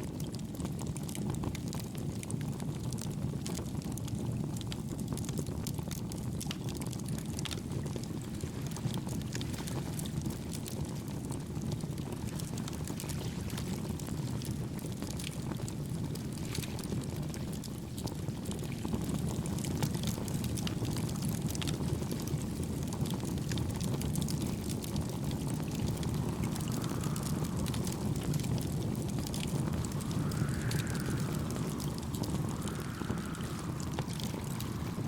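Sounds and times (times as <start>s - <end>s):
campfire crackling and popping: 0.0s - 35.0s
low rushing noise: 24.0s - 35.0s.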